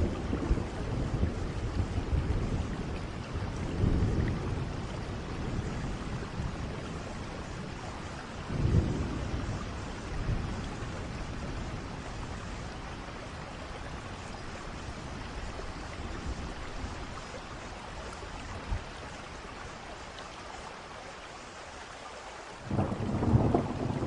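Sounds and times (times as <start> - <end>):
low rolls of thunder: 0.0 - 17.2, 22.6 - 24.0
steady rain falling: 0.0 - 24.0.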